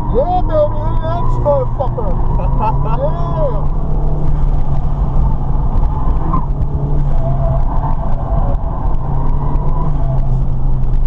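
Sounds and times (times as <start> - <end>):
car engine running hard: 0.0 - 11.0
low road rumble: 0.0 - 11.0
faint tyre squeal: 6.0 - 10.5.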